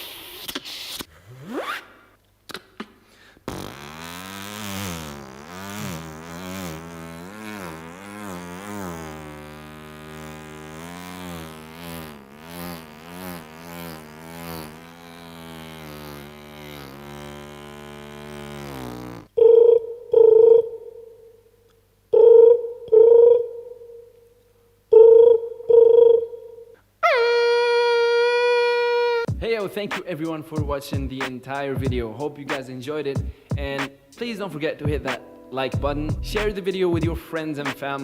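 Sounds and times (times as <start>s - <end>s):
man humming wobbling tone: 35.8s - 38.0s.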